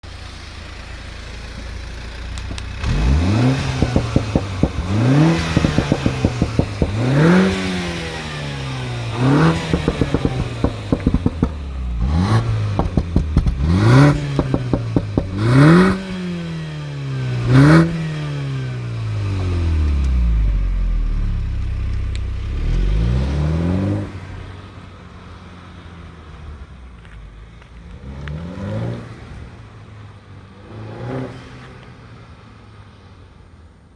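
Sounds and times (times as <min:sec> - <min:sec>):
car engine revving: 0:00.3 - 0:25.2, 0:27.9 - 0:29.6
exhaust crackles and pops: 0:01.4 - 0:16.4, 0:19.3 - 0:24.2.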